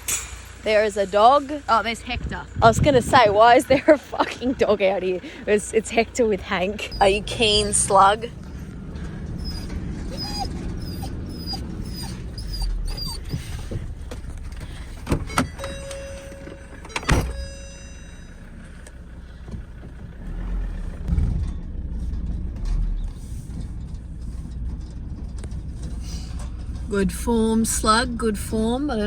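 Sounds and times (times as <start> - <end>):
vehicle rumbling: 0.0 - 29.0
dog yipping: 6.8 - 8.0, 9.4 - 13.8
held tone: 15.2 - 18.8.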